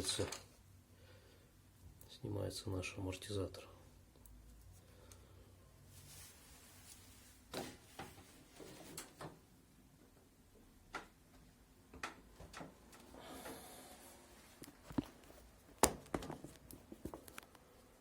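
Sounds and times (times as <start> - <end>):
clicks and knocks of hard plastic: 15.8 - 17.6.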